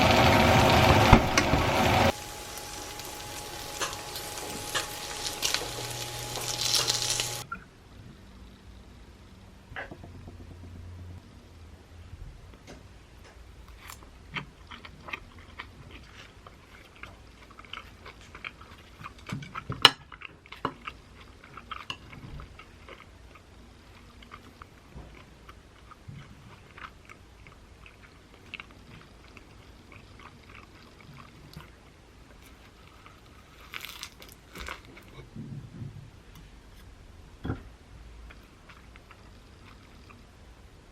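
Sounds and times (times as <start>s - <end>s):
person chewing food: 2.1s - 7.5s, 13.6s - 35.3s, 38.3s - 40.4s.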